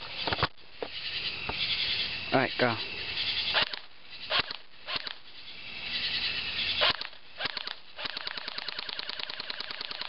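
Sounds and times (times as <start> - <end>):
airsoft gun shots: 3.5 - 5.2, 6.8 - 10.0.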